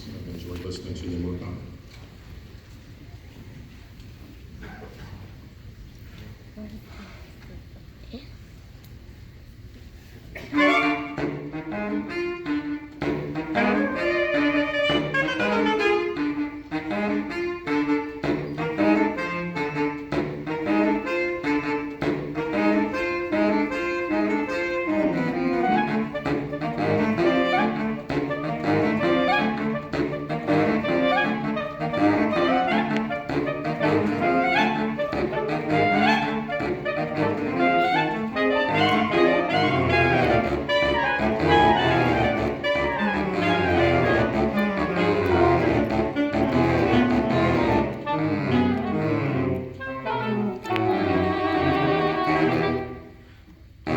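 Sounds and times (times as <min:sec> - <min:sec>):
saxophone quartet playing: 0:09.9 - 0:53.9.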